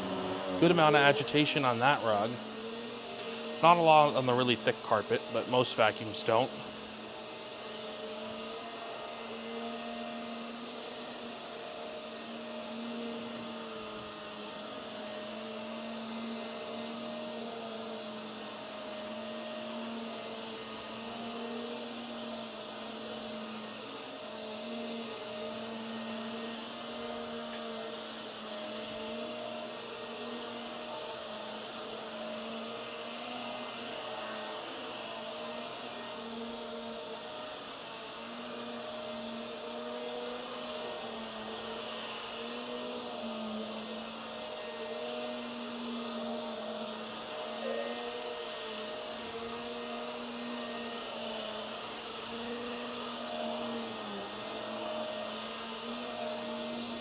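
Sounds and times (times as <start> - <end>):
upright vacuum cleaner running: 0.0 - 57.0.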